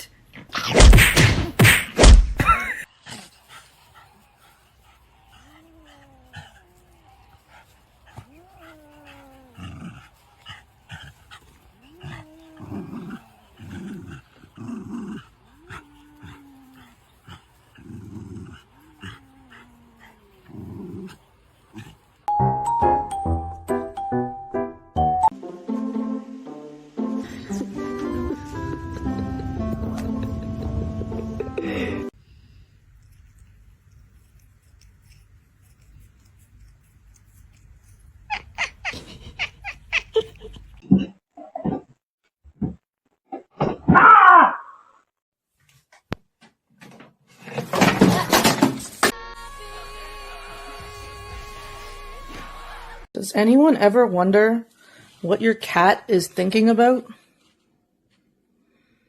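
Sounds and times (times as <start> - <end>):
cat growling: 4.0 - 22.1, 33.0 - 41.9
cat yowling: 8.1 - 9.7, 38.3 - 40.5, 43.9 - 44.9
cat meowing: 38.3 - 40.3.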